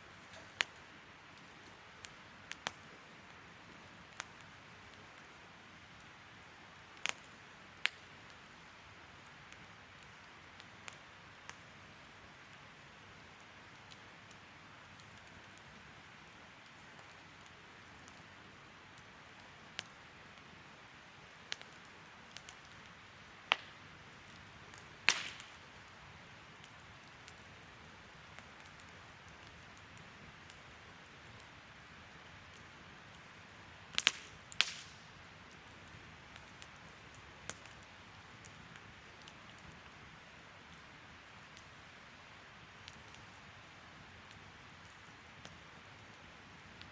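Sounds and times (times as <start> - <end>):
fire crackles and pops: 0.0 - 46.9
wood fire hissing: 13.2 - 46.9.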